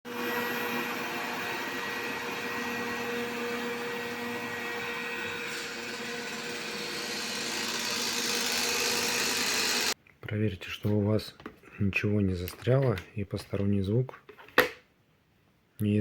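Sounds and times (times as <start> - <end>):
robot vacuum cleaner humming: 0.1 - 10.0.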